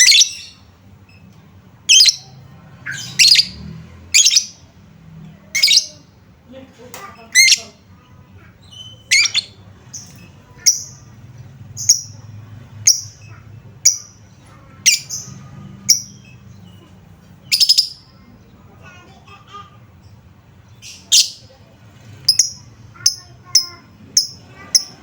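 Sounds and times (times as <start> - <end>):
lovebird shrill chirps: 1.9 - 2.2, 2.9 - 3.6, 4.2 - 4.5, 5.6 - 6.0, 8.7 - 9.6, 17.5 - 18.0.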